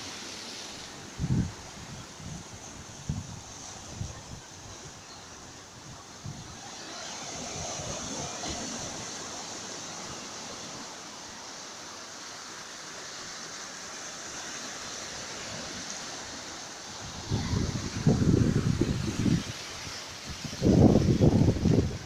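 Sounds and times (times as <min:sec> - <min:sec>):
sea surf washing: 0:00.0 - 0:22.0
wind buffeting microphone: 0:17.0 - 0:22.0.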